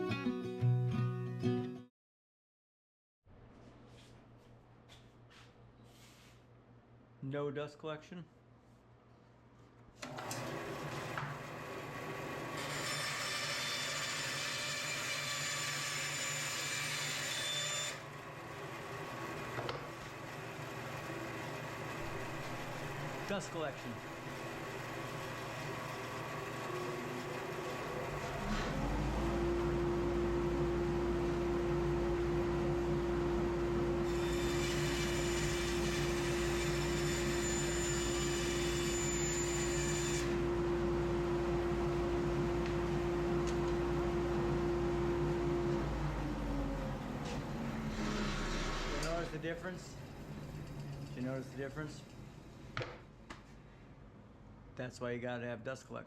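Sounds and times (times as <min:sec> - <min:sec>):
table saw cutting wood: 0:10.3 - 0:50.9
saw blade cutting wood: 0:12.4 - 0:18.0, 0:34.0 - 0:40.5, 0:47.9 - 0:49.5.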